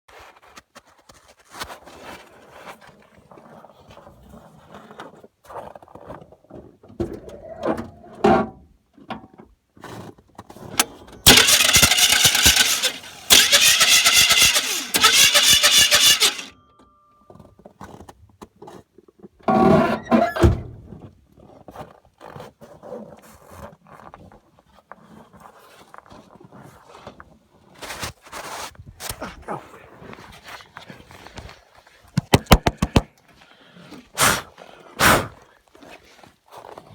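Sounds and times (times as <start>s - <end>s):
starter motor spinning with rattle: 10.8s - 16.5s.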